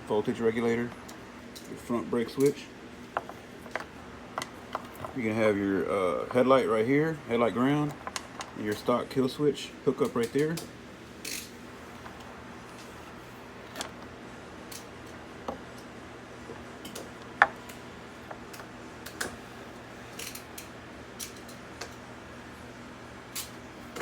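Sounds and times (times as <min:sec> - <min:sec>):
faint background hum: 0:00.0 - 0:24.0.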